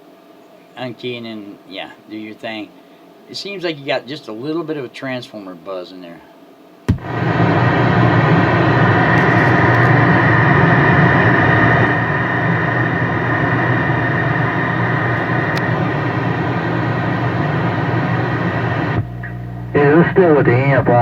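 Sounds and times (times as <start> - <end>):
radio static hiss: 0.0 - 21.0
radio click: 6.9 - 7.4, 9.0 - 10.2, 11.8 - 20.7
low hum: 6.9 - 21.0.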